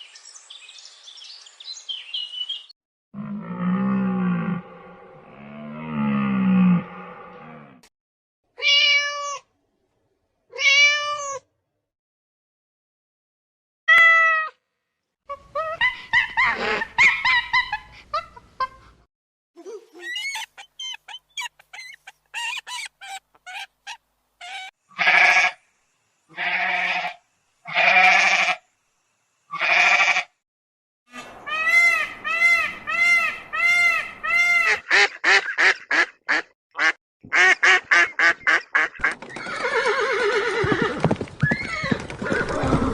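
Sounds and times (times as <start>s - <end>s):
animal chirps: 19.9s - 24.7s
chattering animal calls: 20.0s - 24.7s
long bleats: 24.9s - 25.6s, 26.3s - 28.6s, 29.5s - 30.3s
horse whinny: 39.4s - 42.9s.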